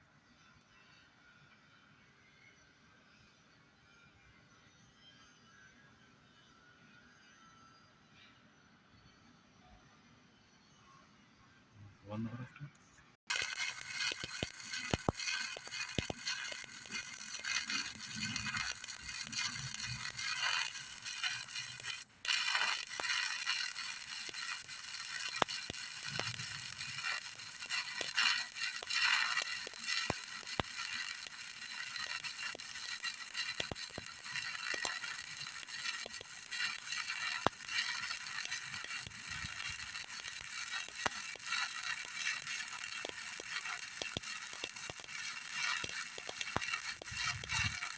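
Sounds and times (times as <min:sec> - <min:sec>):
welding arc crackling and popping: 0:13.2 - 0:47.9.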